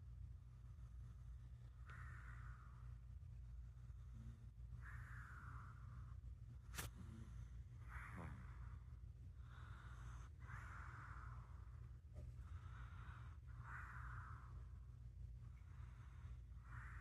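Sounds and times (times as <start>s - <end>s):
cat snoring: 6.8s - 11.6s.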